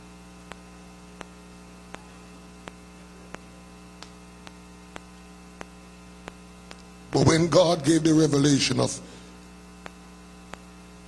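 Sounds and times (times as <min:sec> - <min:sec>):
electrical mains hum: 0:00.0 - 0:11.0
faint ticking clicks: 0:00.4 - 0:06.9, 0:09.8 - 0:10.8.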